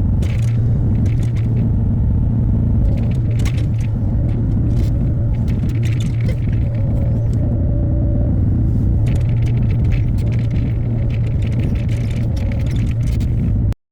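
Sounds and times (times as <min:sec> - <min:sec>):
excavator diesel engine running: 0:00.0 - 0:13.8
short clicks and rattles: 0:00.2 - 0:01.8, 0:02.8 - 0:07.5, 0:08.9 - 0:13.7.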